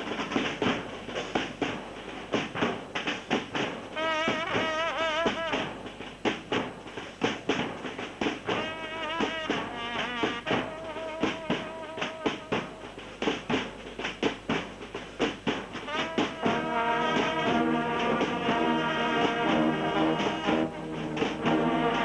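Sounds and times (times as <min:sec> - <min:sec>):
drums on a quick uneven beat: 0:00.0 - 0:22.0
brass instruments playing: 0:03.9 - 0:05.7, 0:08.5 - 0:13.0, 0:15.7 - 0:22.0.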